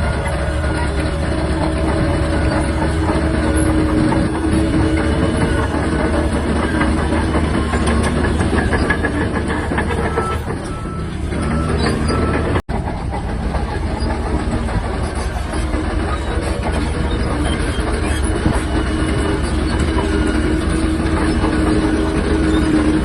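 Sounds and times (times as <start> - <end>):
bulldozer engine droning: 0.0 - 23.0
crawler tracks clanking: 0.0 - 23.0
brief squeaks: 10.0 - 12.4.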